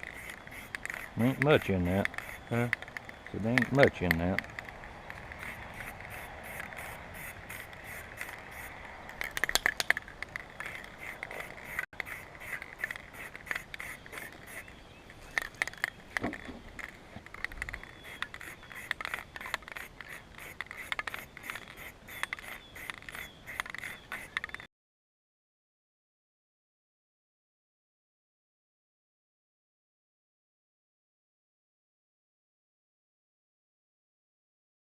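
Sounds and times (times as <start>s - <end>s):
rhythmic hand scraping: 0.0s - 16.0s, 16.7s - 24.4s.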